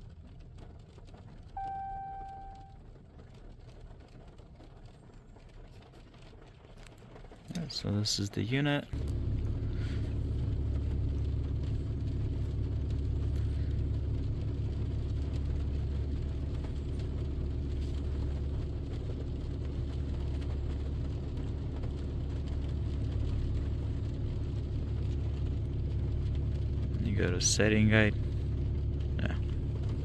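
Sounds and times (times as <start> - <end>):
pickup engine idling: 9.0 - 30.0.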